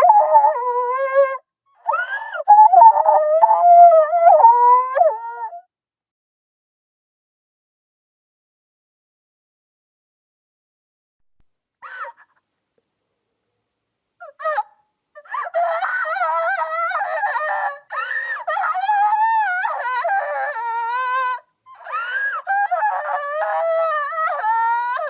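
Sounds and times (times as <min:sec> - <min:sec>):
cartoon girl crying: 0:00.0 - 0:05.6, 0:14.2 - 0:25.0.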